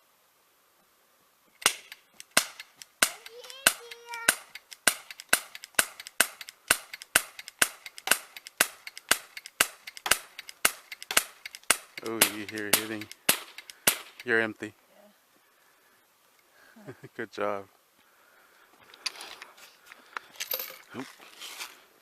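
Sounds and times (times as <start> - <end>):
bb gun shots: 1.6 - 14.4.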